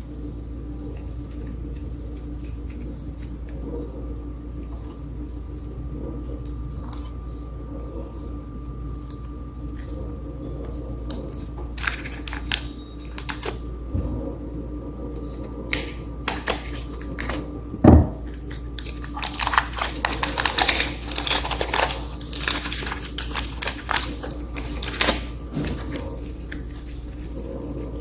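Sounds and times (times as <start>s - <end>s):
rapid crackling and ticking: 18.3s - 28.0s.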